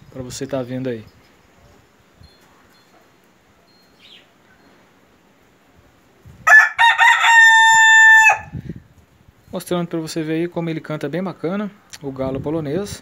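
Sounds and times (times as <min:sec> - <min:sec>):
rooster crowing: 0:06.4 - 0:08.6.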